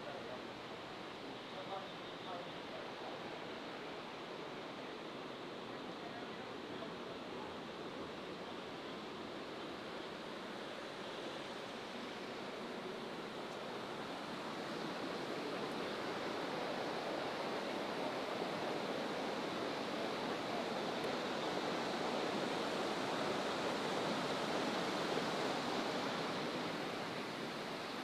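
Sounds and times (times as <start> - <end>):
fast-flowing water rushing: 13.2 - 28.0.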